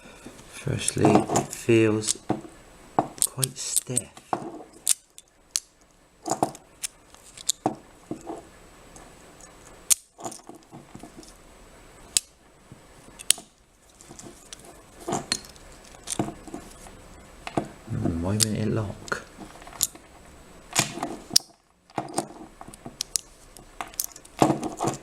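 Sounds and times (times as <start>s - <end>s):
padlock snaps: 4.8s - 5.7s, 9.9s - 10.2s, 23.0s - 23.3s
padlock clicks and clinks: 23.0s - 23.3s, 23.9s - 25.0s.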